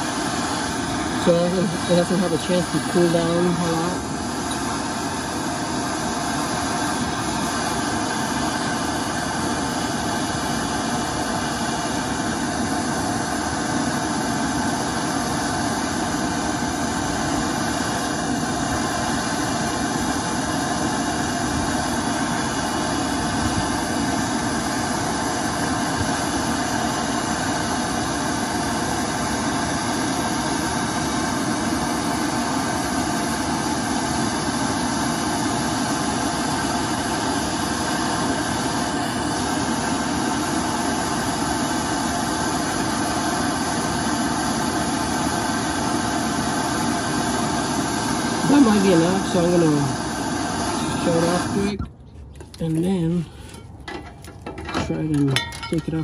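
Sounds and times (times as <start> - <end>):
gas torch hissing: 0.0 - 51.8.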